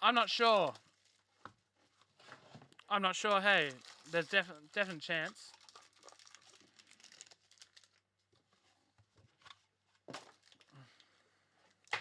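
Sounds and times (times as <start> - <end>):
wrappers crinkling and tearing: 0.6 - 2.2, 2.8 - 8.5, 10.2 - 11.1.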